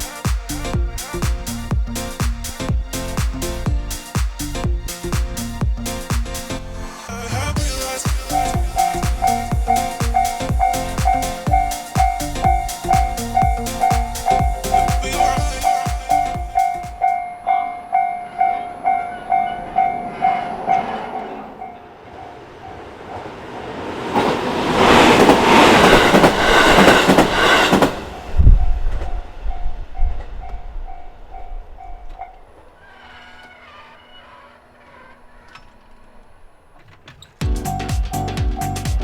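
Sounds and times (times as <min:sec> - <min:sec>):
train passing over crossing: 0:00.0 - 0:36.8
railway crossing bell: 0:07.6 - 0:22.8.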